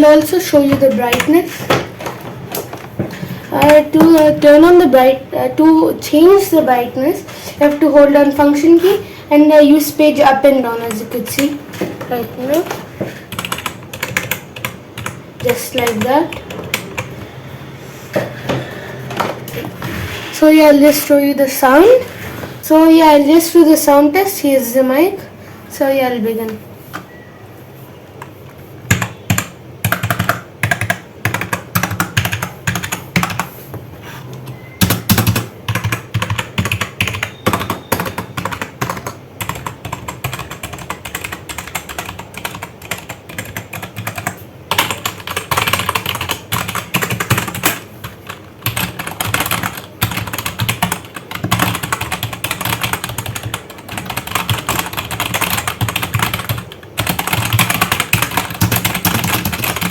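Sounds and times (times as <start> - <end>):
keyboard keys clacking: 34.4 - 59.9.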